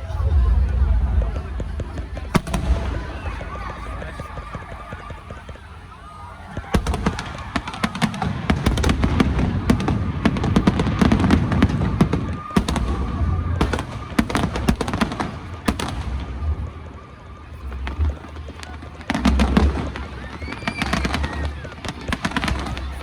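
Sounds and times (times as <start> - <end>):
low booming rumble: 0.0 - 5.9, 8.6 - 20.3
fireworks bangs and crackles: 0.0 - 23.0.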